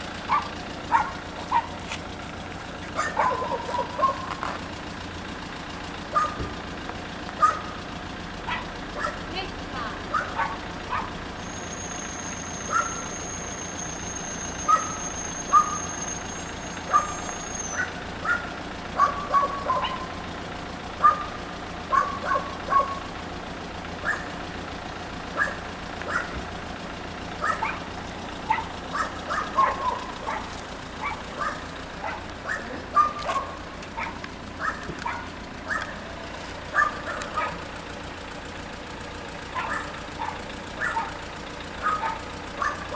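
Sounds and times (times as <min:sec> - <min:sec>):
dog barking: 0:00.3 - 0:01.8, 0:03.0 - 0:04.4, 0:06.1 - 0:06.4, 0:07.4 - 0:07.8, 0:08.5 - 0:11.2, 0:12.6 - 0:13.2, 0:14.7 - 0:15.8, 0:16.6 - 0:20.2, 0:21.0 - 0:23.0, 0:24.0 - 0:24.4, 0:25.4 - 0:26.4, 0:27.4 - 0:36.0, 0:36.6 - 0:37.7, 0:39.5 - 0:41.2, 0:41.8 - 0:42.9.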